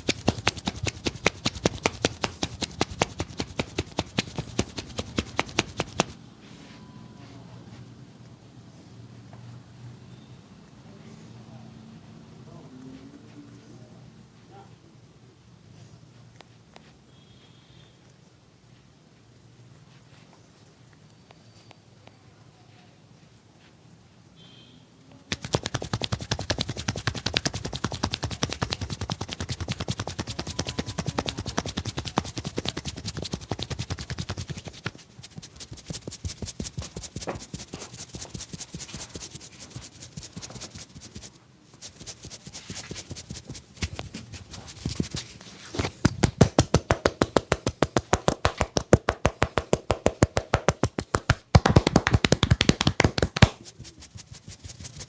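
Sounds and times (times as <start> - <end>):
hands tapping and slapping body: 0.0 - 6.2, 25.3 - 55.0.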